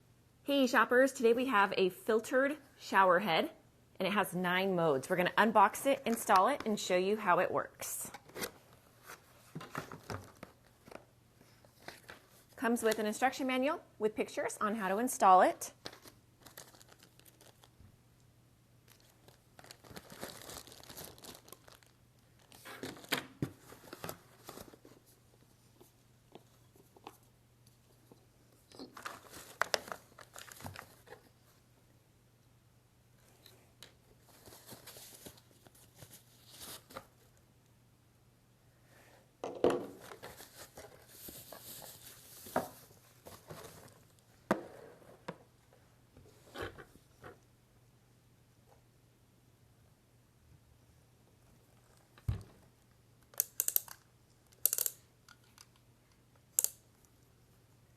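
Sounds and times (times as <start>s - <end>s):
plastic packaging crinkling: 15.8s - 17.8s, 18.9s - 23.1s, 28.8s - 31.1s.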